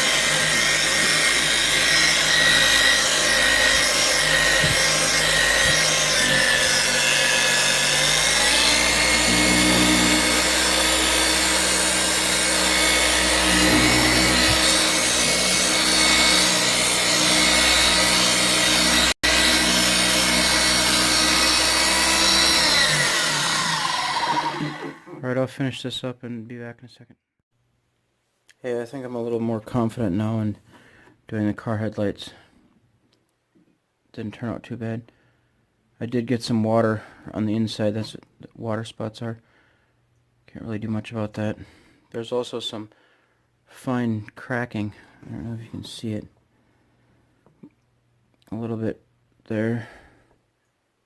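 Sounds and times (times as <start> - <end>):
orbital polisher running: 0.0 - 25.2.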